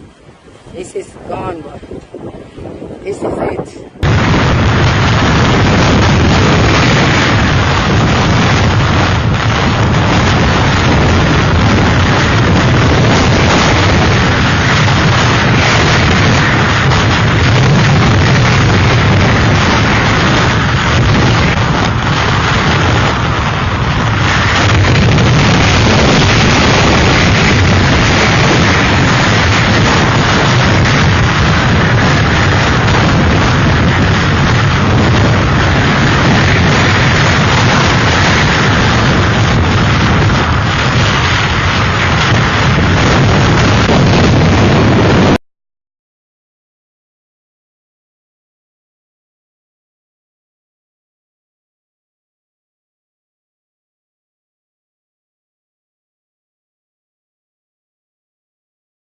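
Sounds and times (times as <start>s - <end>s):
strong wind buffeting microphone: 0.0s - 45.4s.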